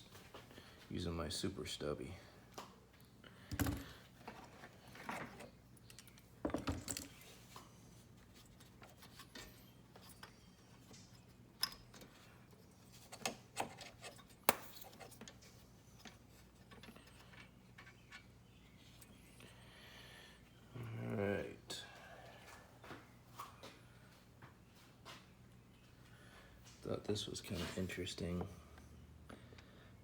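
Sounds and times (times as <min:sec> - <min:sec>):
tool clinks and knocks: 0:05.1 - 0:07.2.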